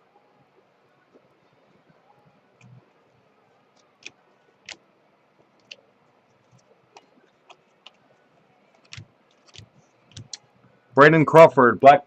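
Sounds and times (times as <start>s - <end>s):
trading cards clicking: 8.8s - 10.4s.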